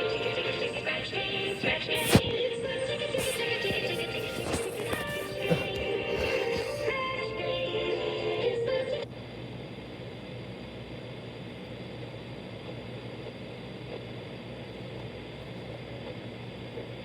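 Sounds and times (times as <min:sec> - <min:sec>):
radio static hiss: 0:00.0 - 0:02.3, 0:03.0 - 0:07.0.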